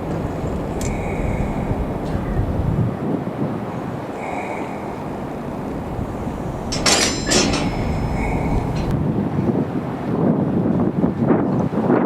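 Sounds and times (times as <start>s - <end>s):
wheels squealing: 0.0s - 9.2s
freight train rumbling past: 0.0s - 10.6s.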